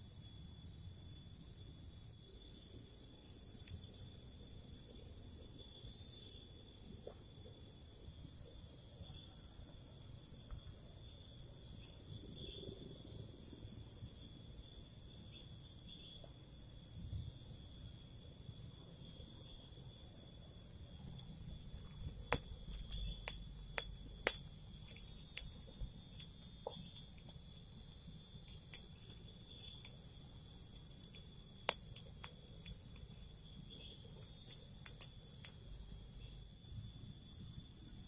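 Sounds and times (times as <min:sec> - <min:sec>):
high-pitched insect chorus: 0:00.0 - 0:38.0
sharp clicks and cracks: 0:21.1 - 0:27.4, 0:28.4 - 0:30.0, 0:30.6 - 0:33.2, 0:33.8 - 0:35.7.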